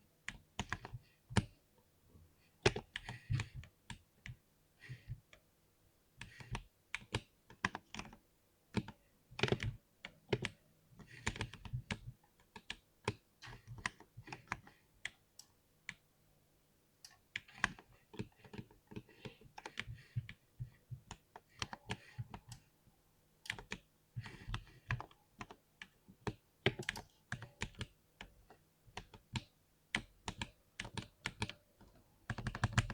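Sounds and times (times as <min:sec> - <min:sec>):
mechanical keyboard typing: 0:32.3 - 0:32.9.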